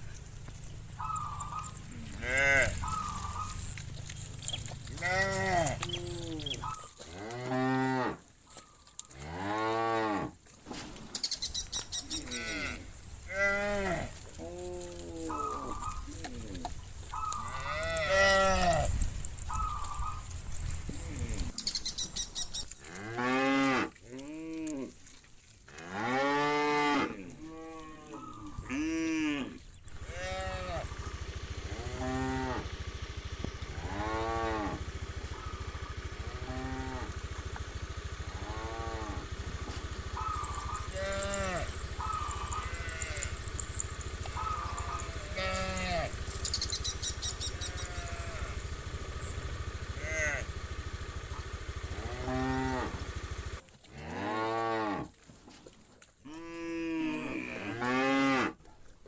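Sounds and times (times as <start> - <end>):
steady low hum: 0.0 - 7.2, 10.6 - 23.0, 26.4 - 53.6
cattle mooing: 0.0 - 8.2, 11.8 - 21.6, 22.7 - 25.0, 25.7 - 32.8, 33.7 - 35.6, 36.2 - 53.2, 56.3 - 58.6.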